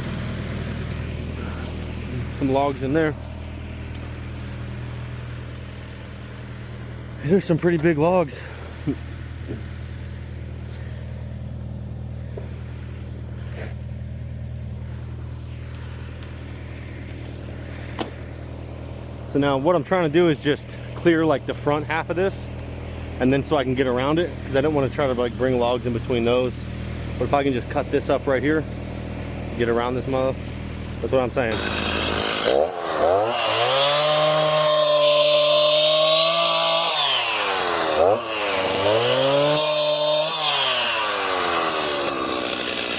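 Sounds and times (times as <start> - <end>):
engine running steadily: 0.0 - 42.9
chainsaw cutting log: 0.6 - 3.3, 30.8 - 42.9.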